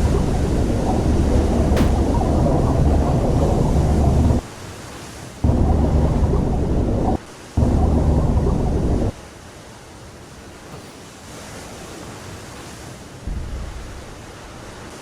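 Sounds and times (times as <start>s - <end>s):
deep rumble: 0.0s - 4.5s, 5.4s - 9.2s
wind and sea hiss: 0.0s - 15.0s.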